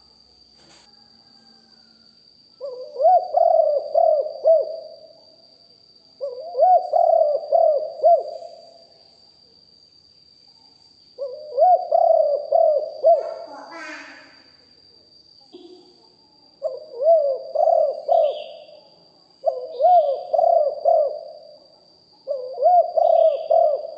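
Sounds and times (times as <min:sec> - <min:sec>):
dove cooing: 0:02.6 - 0:05.1, 0:06.2 - 0:08.6, 0:11.2 - 0:14.2, 0:16.6 - 0:18.8, 0:19.4 - 0:21.6, 0:22.2 - 0:23.9.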